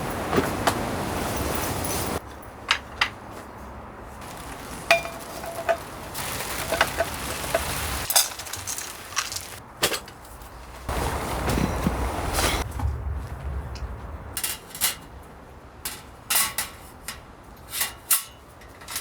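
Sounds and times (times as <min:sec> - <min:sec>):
metal gear clinking and clanking: 0:04.3 - 0:10.0
wind rushing: 0:10.9 - 0:14.4.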